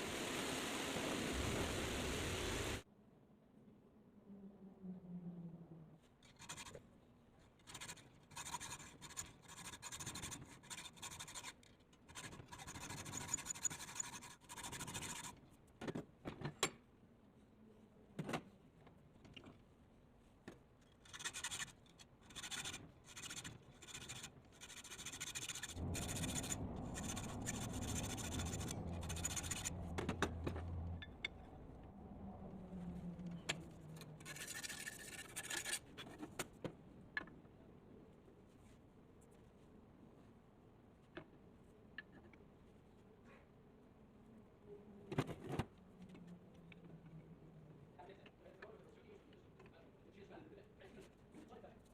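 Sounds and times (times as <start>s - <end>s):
tool rasping across metal: 7.6s - 15.4s, 21.0s - 29.9s.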